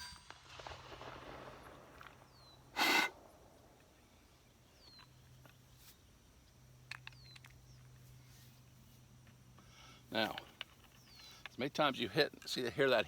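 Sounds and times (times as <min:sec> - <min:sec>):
breathy puff: 0:02.8 - 0:03.2
bird chirping: 0:04.0 - 0:05.6, 0:07.0 - 0:08.2, 0:10.8 - 0:11.6.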